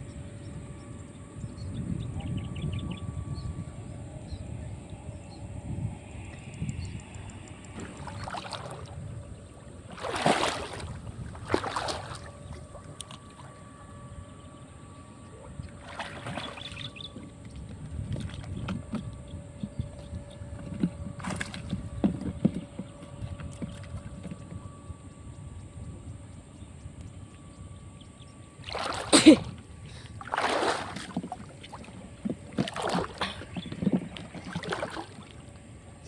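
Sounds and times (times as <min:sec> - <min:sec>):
faint steady hum: 0:00.0 - 0:36.0
low steady rumble: 0:00.0 - 0:36.0
water sloshing and splashing: 0:07.7 - 0:25.0, 0:28.4 - 0:36.0.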